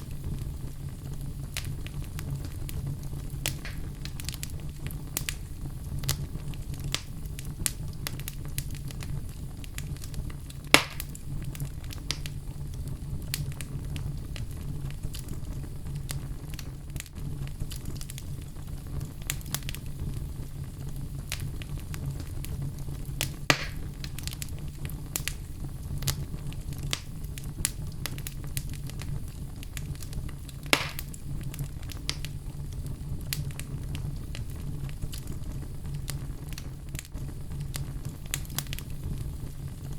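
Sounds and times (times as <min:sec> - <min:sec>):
sharp fire pops: 0:00.0 - 0:39.9
wood fire crackling: 0:00.0 - 0:39.9.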